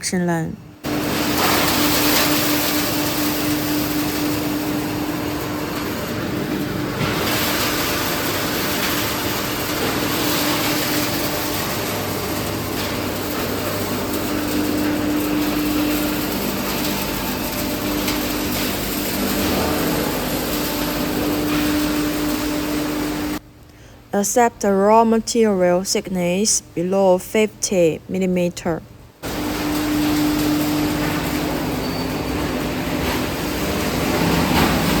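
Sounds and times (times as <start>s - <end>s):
hammer mill crusher running: 0.9s - 23.4s.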